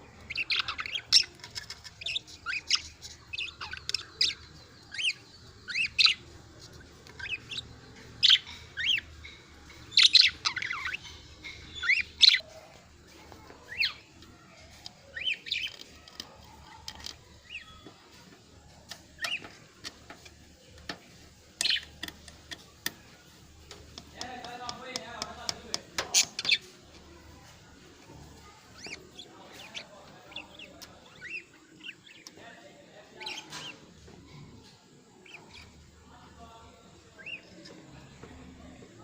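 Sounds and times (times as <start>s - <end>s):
budgies chirping and chattering: 0.0s - 39.0s.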